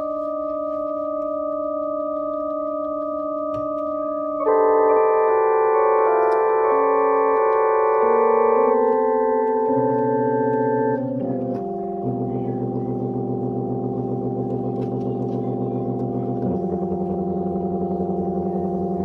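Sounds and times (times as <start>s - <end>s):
sustained keyboard chords with tremolo: 0.0s - 19.0s.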